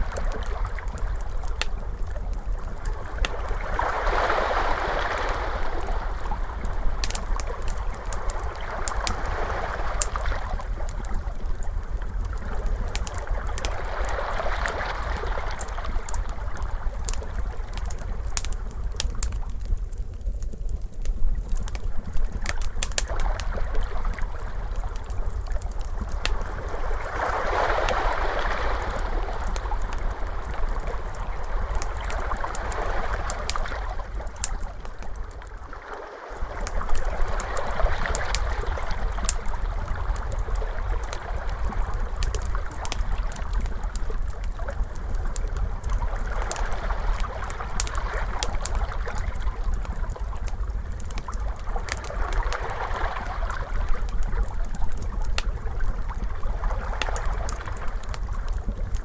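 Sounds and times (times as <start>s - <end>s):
wood fire crackling: 0.0s - 59.0s
ocean waves washing: 3.3s - 10.6s, 26.5s - 34.2s.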